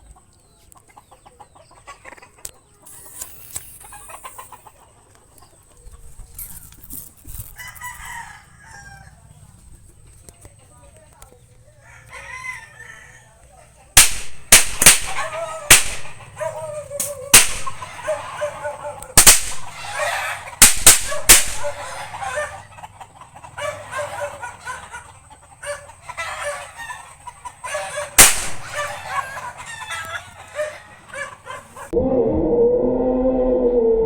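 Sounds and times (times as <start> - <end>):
firecrackers banging: 14.0 - 22.4, 28.1 - 29.3.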